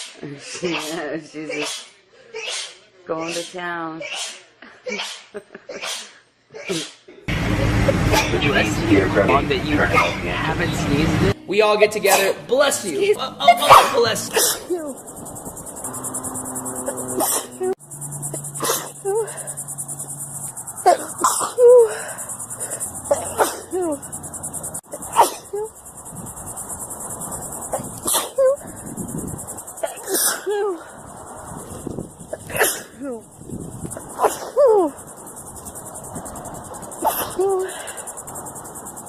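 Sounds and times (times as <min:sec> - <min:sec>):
person sneezing: 0:00.0 - 0:07.0, 0:13.6 - 0:14.8, 0:17.2 - 0:17.5, 0:18.6 - 0:19.3, 0:23.1 - 0:23.8, 0:32.5 - 0:33.1, 0:37.0 - 0:37.8
crickets chirring: 0:12.1 - 0:39.0.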